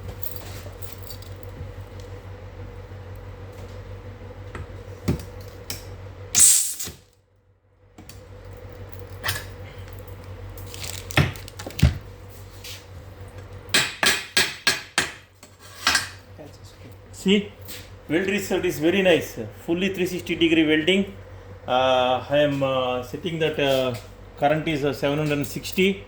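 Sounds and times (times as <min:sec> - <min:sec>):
steady hum: 0:06.2 - 0:07.0, 0:16.2 - 0:26.0
stud weld crackling hiss: 0:06.4 - 0:06.9.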